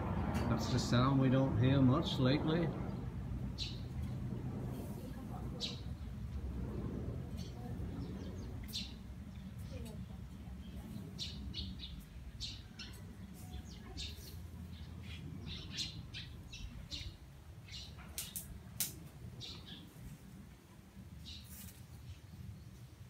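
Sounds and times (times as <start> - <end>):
low steady rumble: 0.0 - 12.6
small birds chirping: 2.7 - 23.0.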